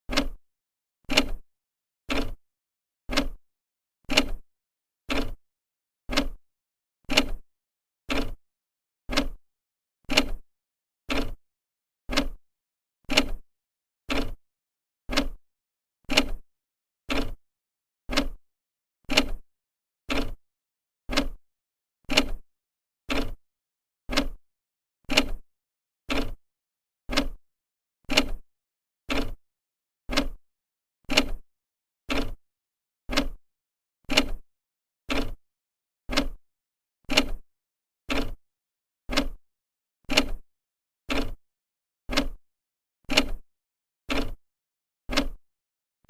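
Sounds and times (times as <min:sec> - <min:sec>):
clock ticking: 0:00.1 - 0:00.4, 0:03.1 - 0:03.4, 0:06.1 - 0:06.4, 0:27.1 - 0:27.4, 0:30.1 - 0:30.4, 0:32.1 - 0:32.4, 0:33.1 - 0:33.4, 0:35.1 - 0:35.4, 0:36.1 - 0:36.4, 0:38.1 - 0:38.4, 0:39.1 - 0:39.4, 0:41.1 - 0:41.4, 0:42.1 - 0:42.4, 0:44.1 - 0:44.4, 0:45.1 - 0:45.4.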